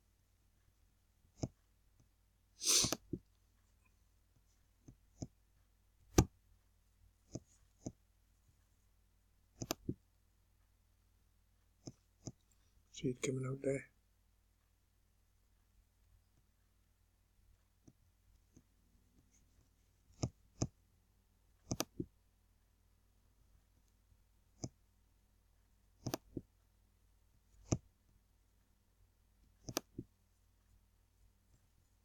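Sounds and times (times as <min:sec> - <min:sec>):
mouse button clicks: 0:09.6 - 0:10.0, 0:21.7 - 0:22.1, 0:26.0 - 0:26.4, 0:29.6 - 0:30.0.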